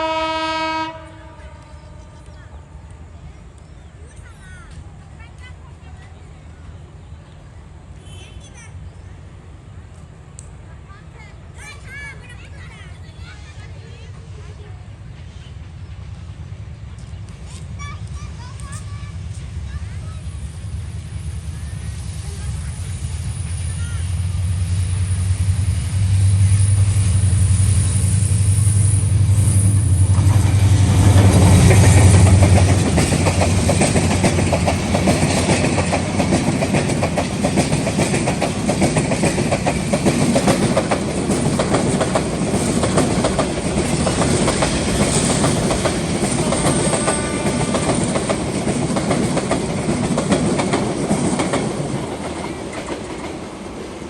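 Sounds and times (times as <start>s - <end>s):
diesel locomotive engine drone: 0.0s - 54.0s
train wheels clattering over rail joints: 29.1s - 53.8s.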